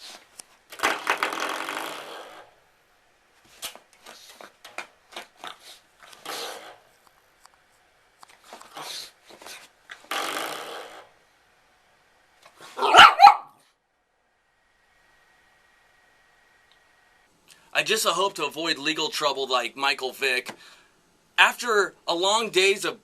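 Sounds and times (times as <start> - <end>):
dog snorting and growling: 5.4 - 6.8.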